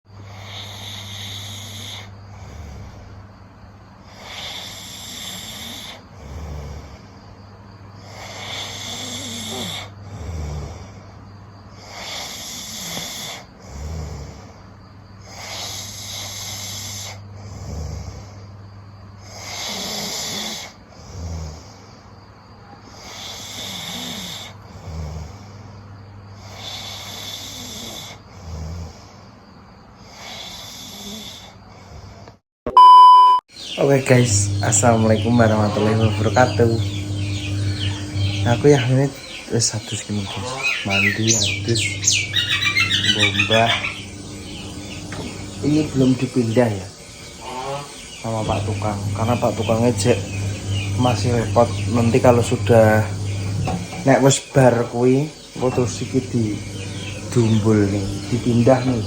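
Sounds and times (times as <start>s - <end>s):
person snoring loudly: 4.1s - 7.0s, 8.0s - 10.9s, 11.8s - 14.5s, 15.3s - 18.4s, 19.2s - 21.7s, 23.0s - 25.5s, 26.4s - 29.0s, 34.1s - 39.2s, 39.8s - 54.0s
steady low hum: 13.4s - 19.4s, 33.5s - 59.0s.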